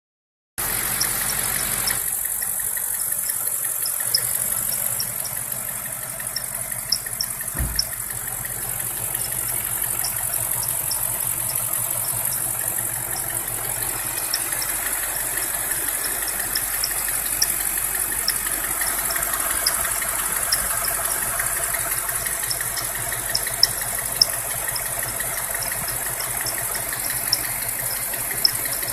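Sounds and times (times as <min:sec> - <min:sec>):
car engine idling: 0:00.6 - 0:28.9
high-pitched squeaks: 0:06.2 - 0:08.0, 0:09.3 - 0:28.9
low thump: 0:07.6 - 0:08.0.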